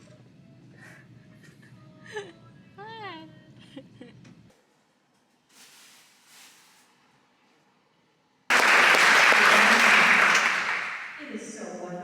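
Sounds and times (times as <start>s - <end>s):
audience applauding: 8.5s - 11.3s.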